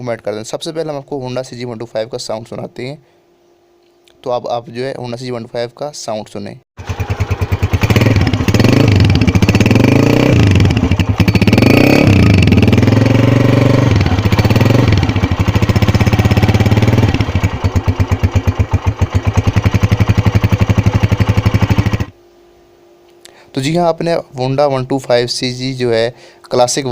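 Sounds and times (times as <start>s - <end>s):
motorcycle engine revving and idling: 6.8s - 22.2s.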